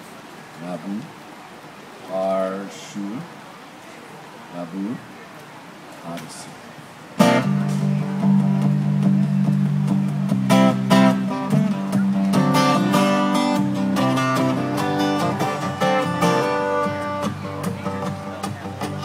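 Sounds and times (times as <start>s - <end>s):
acoustic guitar strumming: 7.2s - 19.0s.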